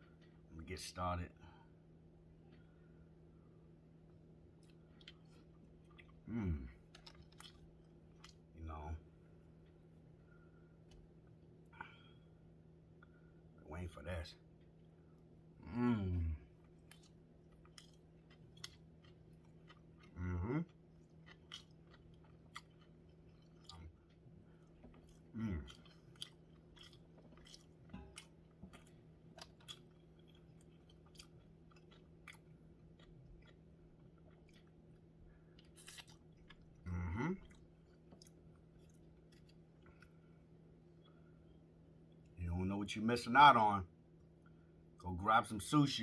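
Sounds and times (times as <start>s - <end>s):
person chewing food: 4.4s - 8.5s, 16.5s - 42.4s
short vocal sounds: 6.2s - 6.8s, 20.1s - 20.7s, 25.3s - 25.7s.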